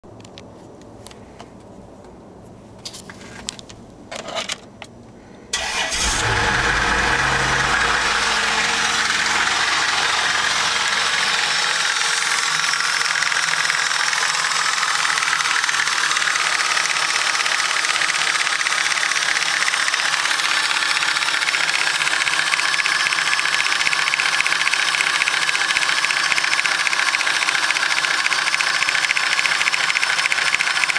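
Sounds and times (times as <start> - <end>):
engine starting and idling: 5.5 - 30.9
loud rapid engine knock: 6.3 - 30.9.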